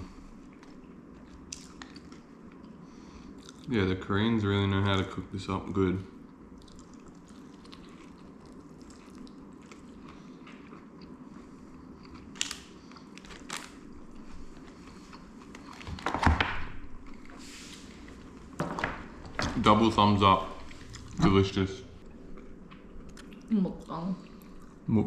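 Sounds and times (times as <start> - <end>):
person chewing crunchy food: 0.3 - 3.7, 6.2 - 16.0.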